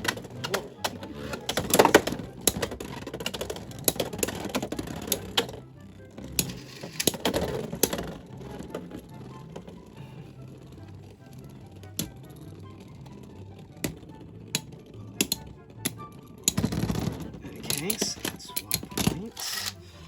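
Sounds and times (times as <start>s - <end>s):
spinning tops clashing: 17.7s - 20.0s.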